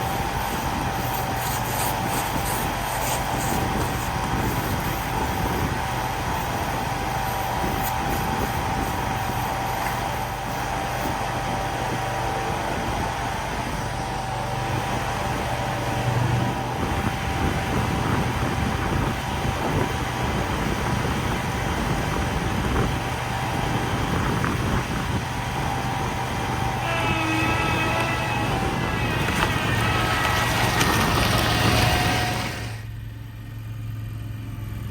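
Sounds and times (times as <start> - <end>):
vehicle engine running: 0.0 - 34.9
steady high tone: 26.7 - 30.5.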